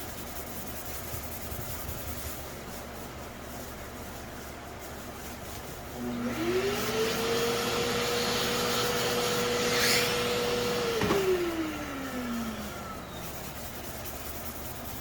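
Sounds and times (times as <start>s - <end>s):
small electric motor whining: 6.0s - 13.5s.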